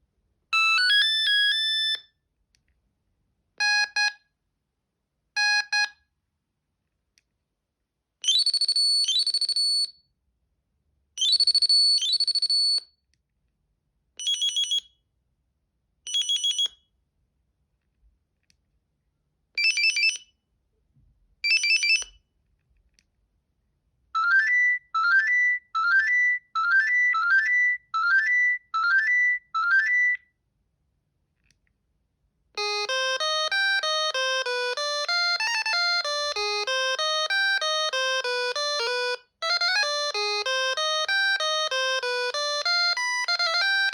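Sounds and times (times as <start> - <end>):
phone ringtone melody: 0.6 - 2.0, 32.6 - 43.9.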